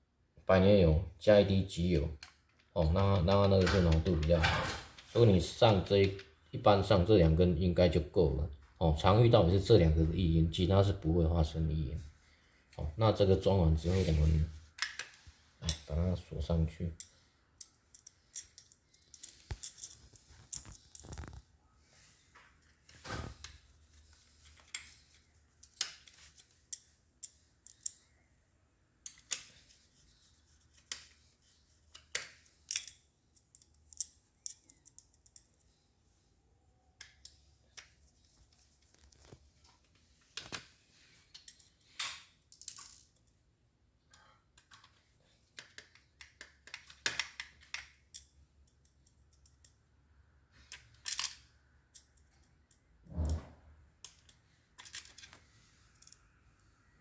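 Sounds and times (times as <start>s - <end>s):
plastic and metal parts clicking: 24.4s - 28.0s, 44.6s - 49.8s.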